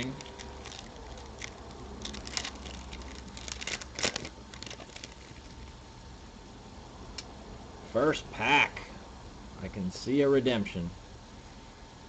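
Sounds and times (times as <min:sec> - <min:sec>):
wrapper crackling and rustling: 0:00.0 - 0:05.8.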